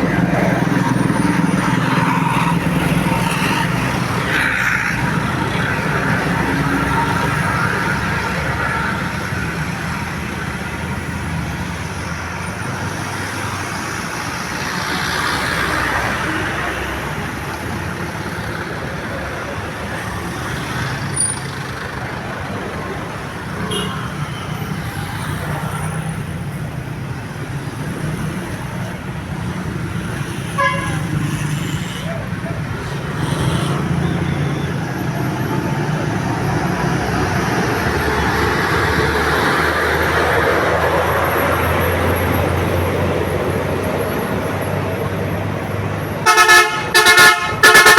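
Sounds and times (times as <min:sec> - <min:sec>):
road traffic: 0:00.0 - 0:47.9
horn toot: 0:30.6 - 0:31.2, 0:46.2 - 0:47.9.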